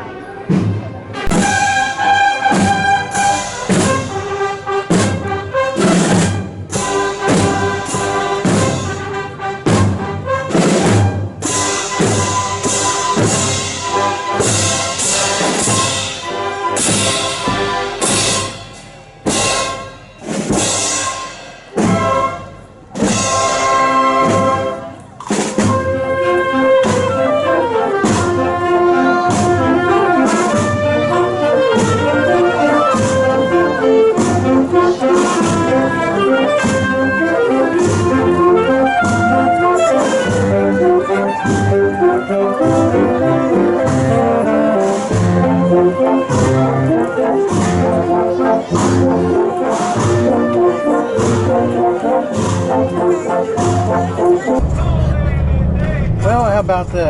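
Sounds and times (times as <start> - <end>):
horns playing a tune: 1.1 - 25.0, 25.6 - 48.3
drum strikes: 2.5 - 4.2, 5.9 - 8.9, 9.7 - 23.6, 54.6 - 57.0.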